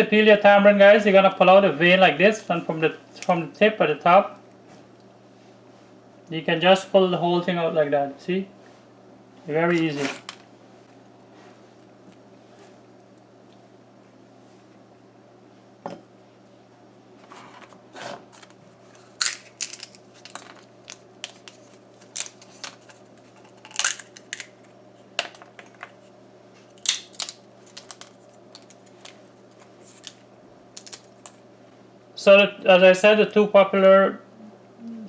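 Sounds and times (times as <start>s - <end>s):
faint steady hum: 0.0s - 35.0s
pod shells cracking: 19.0s - 24.7s, 26.7s - 29.2s, 30.8s - 31.4s.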